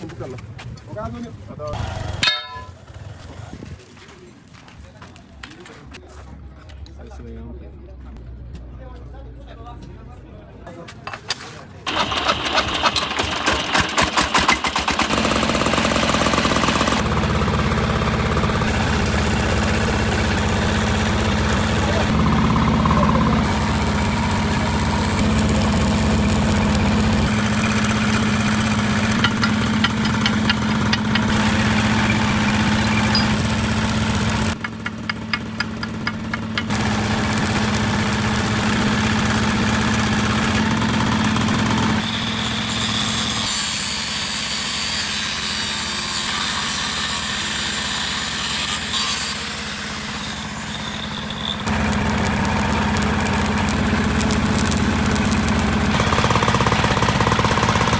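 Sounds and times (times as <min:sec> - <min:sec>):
engine idling with low hum: 0:11.9 - 0:42.0, 0:50.4 - 0:57.9.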